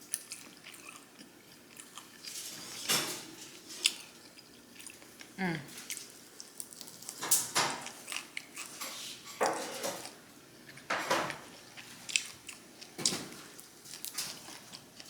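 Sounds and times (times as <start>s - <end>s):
chewing and biting food: 0.0s - 2.4s, 7.8s - 8.9s, 10.0s - 15.0s.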